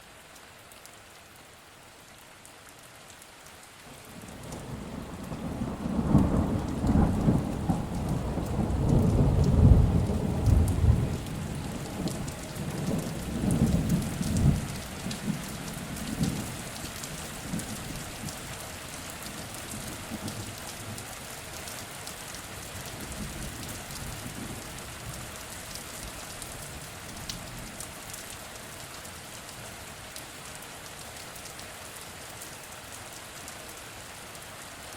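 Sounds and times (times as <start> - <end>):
steady rain falling: 0.0 - 34.9
rolling thunder: 4.6 - 15.4.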